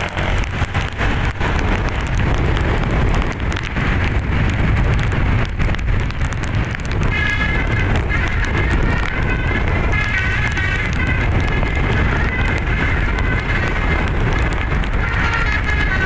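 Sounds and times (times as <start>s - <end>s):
bus engine rumble: 0.0s - 16.0s
rushing road noise: 0.0s - 16.0s
musical air horn: 6.9s - 16.0s.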